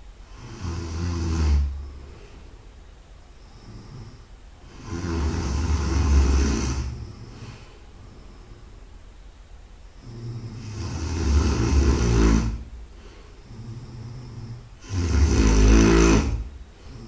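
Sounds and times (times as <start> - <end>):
quiet breath: 0.0 - 9.1, 9.9 - 17.0
person snoring loudly: 0.2 - 2.1, 3.4 - 7.6, 10.0 - 12.7, 13.4 - 17.0.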